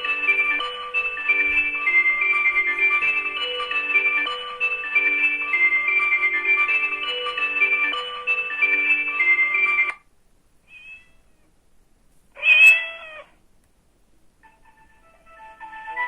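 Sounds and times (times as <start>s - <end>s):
polyphonic ringtone melody: 0.0s - 10.0s, 14.4s - 16.0s
meow ringtone: 10.7s - 11.2s, 12.4s - 13.3s.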